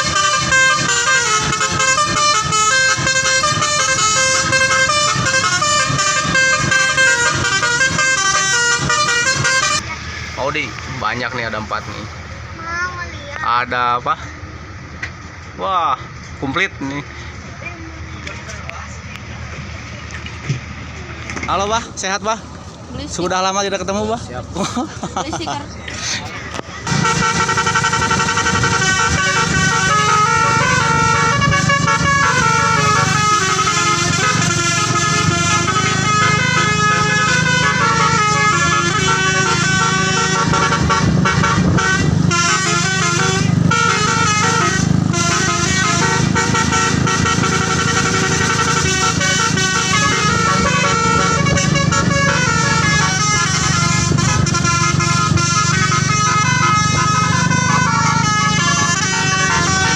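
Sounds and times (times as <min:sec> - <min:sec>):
bus musical horn playing a tune: 0:00.0 - 0:10.0, 0:26.8 - 0:59.9.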